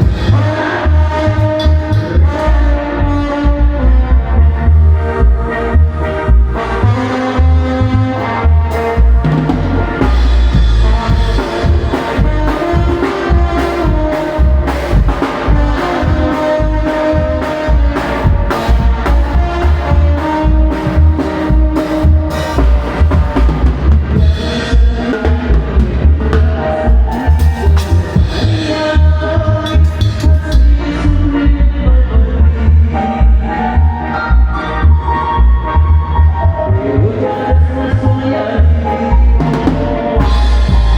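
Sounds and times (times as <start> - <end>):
drum kit steady beat: 0.0 - 2.4, 8.7 - 31.0, 39.1 - 40.9
banda playing live: 0.0 - 40.9
heavy bass: 0.0 - 40.9.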